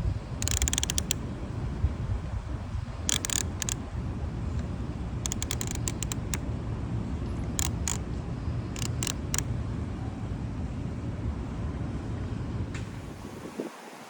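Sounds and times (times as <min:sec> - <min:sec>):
plastic toy pieces clicking: 0:00.4 - 0:01.2, 0:03.1 - 0:03.8, 0:05.3 - 0:06.4, 0:07.6 - 0:08.0, 0:08.8 - 0:09.5
steady low rumble: 0:01.0 - 0:13.5.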